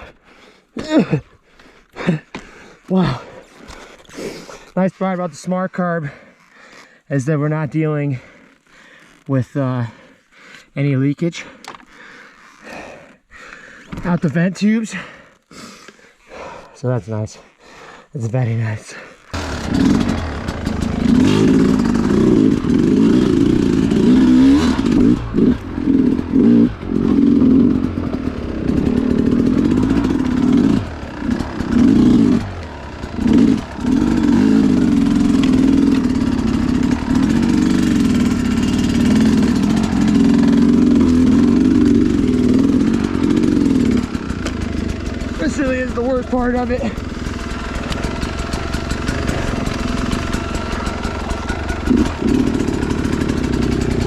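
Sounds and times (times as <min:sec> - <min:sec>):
dirt bike engine revving: 0:19.3 - 0:54.0.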